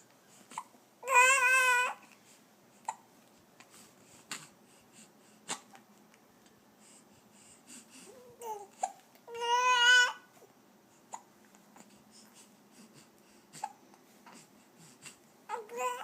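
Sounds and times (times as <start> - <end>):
baby whimpering: 0.5 - 2.1, 11.8 - 16.0.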